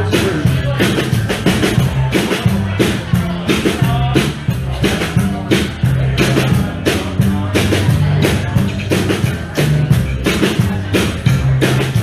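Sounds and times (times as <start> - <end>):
bass line: 0.0 - 12.0
blues-rock band playing: 0.0 - 12.0
drum kit beat: 0.0 - 12.0.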